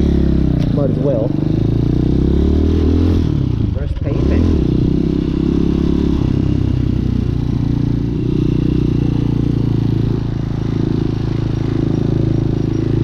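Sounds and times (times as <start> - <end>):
motorcycle engine at low speed: 0.0 - 13.0.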